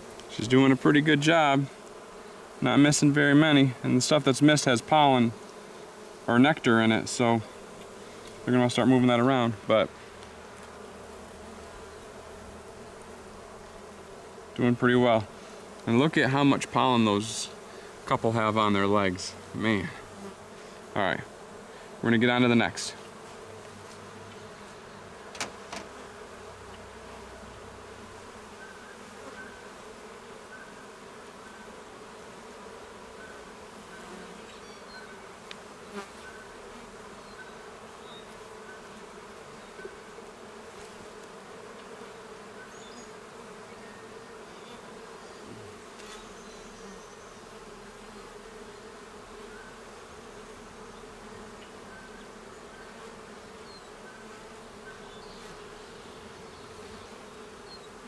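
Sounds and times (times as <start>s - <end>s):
bees buzzing: 0.0s - 58.0s
light knocks: 25.3s - 26.0s.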